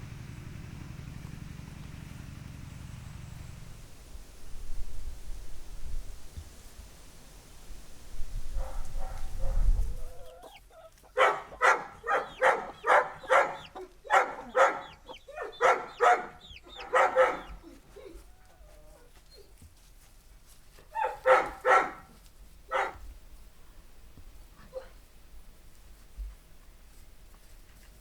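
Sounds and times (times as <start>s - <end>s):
dog barking: 8.6s - 9.8s, 11.1s - 17.8s, 20.9s - 23.0s, 24.6s - 25.0s.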